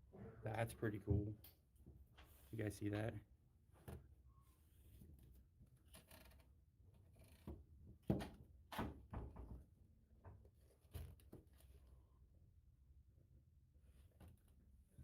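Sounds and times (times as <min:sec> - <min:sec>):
faint knocks and thumps: 0:00.1 - 0:02.3, 0:07.4 - 0:11.7.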